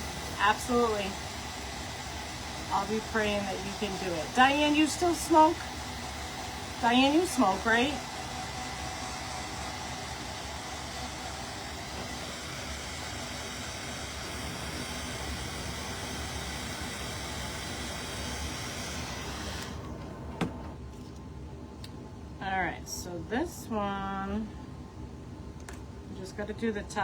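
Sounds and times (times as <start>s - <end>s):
electric blower air rushing: 0.0s - 20.7s.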